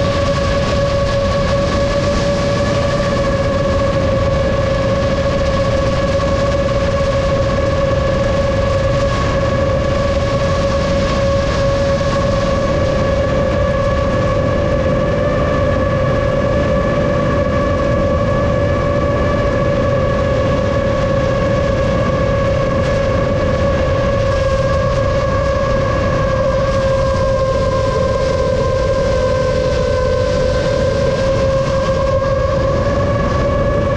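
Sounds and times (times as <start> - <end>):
propeller air rushing: 0.0 - 33.9.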